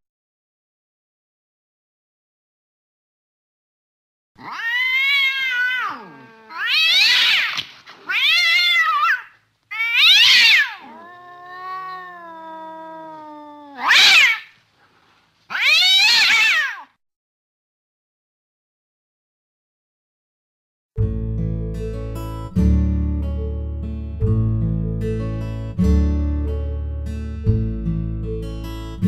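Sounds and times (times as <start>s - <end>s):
cat meowing: 4.4s - 14.6s, 15.5s - 17.0s.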